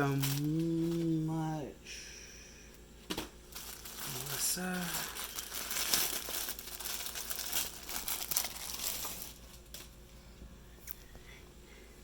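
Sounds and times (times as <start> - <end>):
packaging crinkling: 0.0 - 1.2, 3.1 - 10.0.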